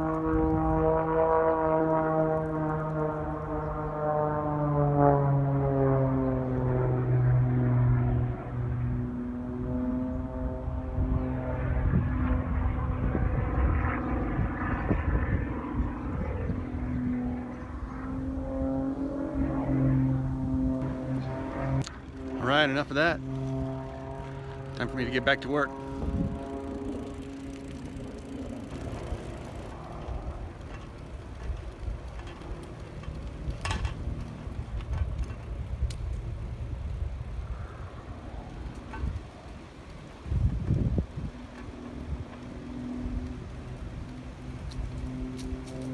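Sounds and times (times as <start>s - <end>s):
aircraft engines droning: 0.0s - 45.9s
wind rumble on microphone: 0.0s - 45.9s
bicycle clicks and rattles: 21.1s - 45.9s.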